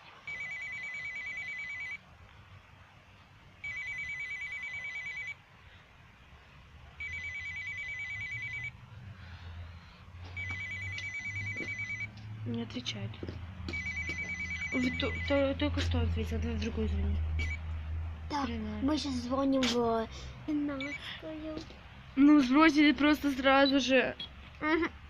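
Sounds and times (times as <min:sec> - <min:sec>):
intercom trilling call tone: 0:10.4 - 0:12.1, 0:13.7 - 0:15.4.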